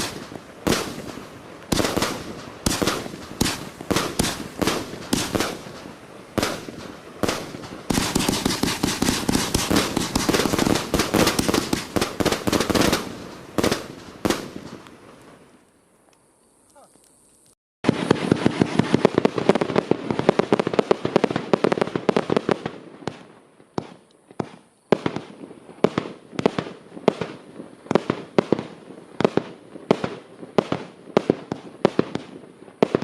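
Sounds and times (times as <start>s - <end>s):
firework cake bangs: 0.0s - 14.8s.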